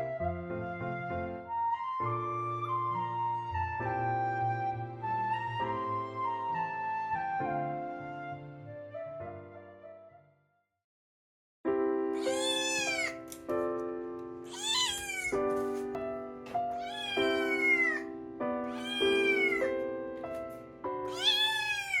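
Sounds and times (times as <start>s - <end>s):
cat meowing: 12.2s - 13.4s, 14.5s - 15.8s, 16.7s - 19.8s, 21.0s - 22.0s.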